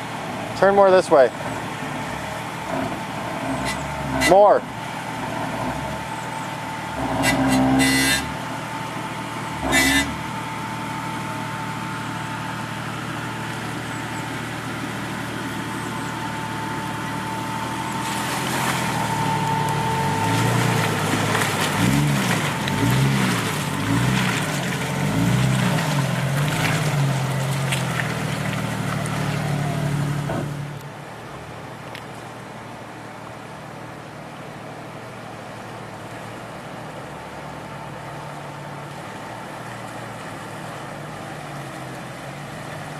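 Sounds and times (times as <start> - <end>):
off-road engine revving: 0.0 - 30.8.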